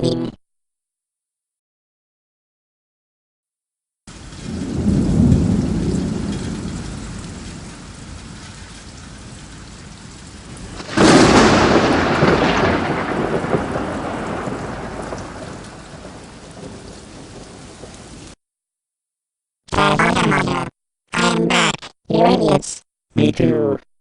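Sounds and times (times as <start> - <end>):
loud thunderclap: 4.1 - 18.4
steady rain: 4.1 - 18.4
thunder rumbling: 4.1 - 18.4.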